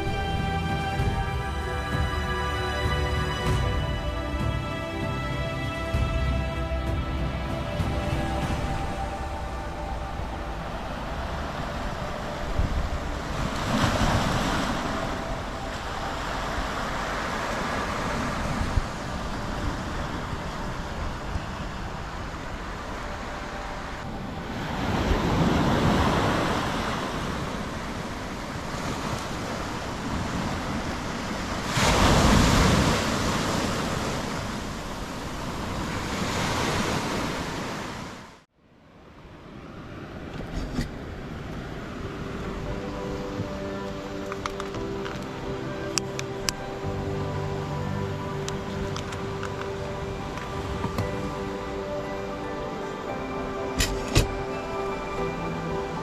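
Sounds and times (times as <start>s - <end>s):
sea waves breaking on shore: 0.0s - 56.0s.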